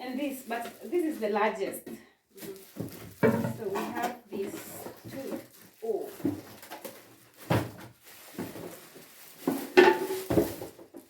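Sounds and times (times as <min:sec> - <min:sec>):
cooking pots knocking and clanking: 0:03.1 - 0:04.6, 0:09.4 - 0:11.0.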